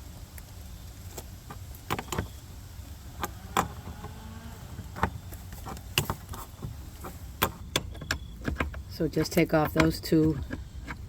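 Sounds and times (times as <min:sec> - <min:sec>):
plumbing fittings clicking and knocking: 0:04.9 - 0:11.0.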